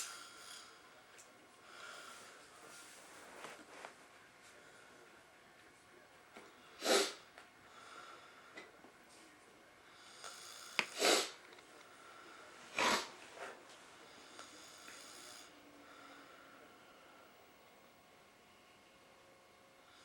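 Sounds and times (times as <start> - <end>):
man snoring: 0.0 - 0.8, 10.0 - 11.4, 14.3 - 16.1
soft breathing: 1.6 - 5.3, 7.6 - 11.1, 11.7 - 17.4.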